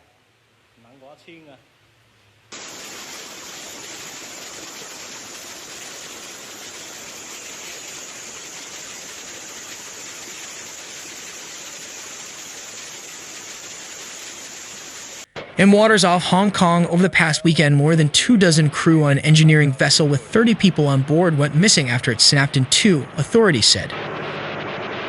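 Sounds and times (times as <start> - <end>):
rushing water: 2.5 - 15.3, 18.2 - 23.8.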